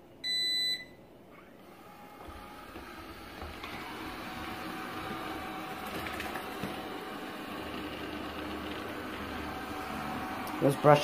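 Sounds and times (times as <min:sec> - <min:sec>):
robot vacuum cleaner whirring: 0:01.6 - 0:11.0.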